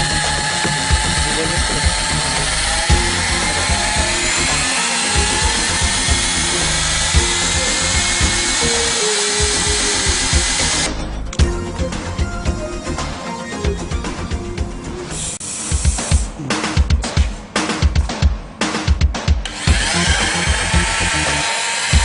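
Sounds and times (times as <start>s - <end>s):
magnetic drill whining: 0.0s - 10.9s, 19.4s - 22.0s.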